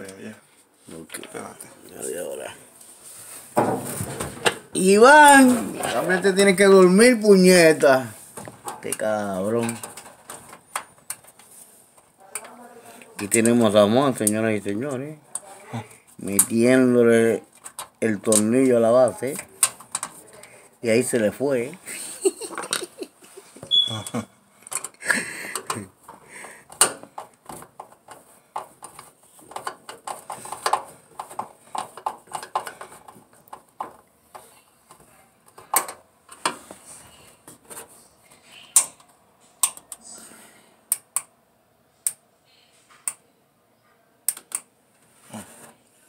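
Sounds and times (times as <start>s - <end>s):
hand tools clicking and tapping: 22.4s - 36.8s, 38.6s - 40.0s, 44.3s - 44.7s.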